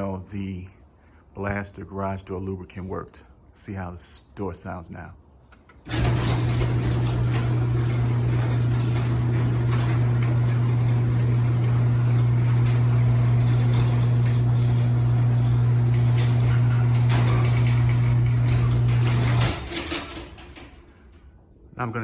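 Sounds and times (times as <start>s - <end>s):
garage door rumbling on track: 5.8s - 21.3s
garage door opener motor hum: 5.8s - 21.4s.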